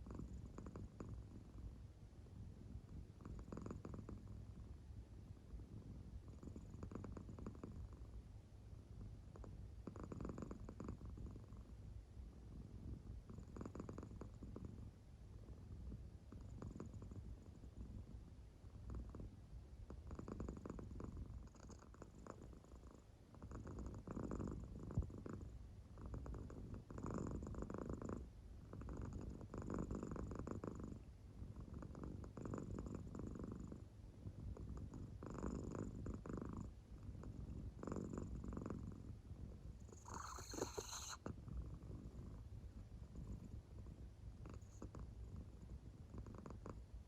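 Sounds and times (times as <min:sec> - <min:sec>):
cat purring softly: 0:00.0 - 0:47.0.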